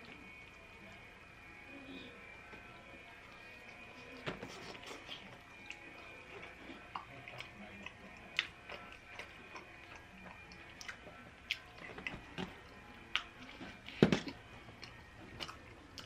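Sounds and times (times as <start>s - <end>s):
person chewing food: 3.2s - 16.0s.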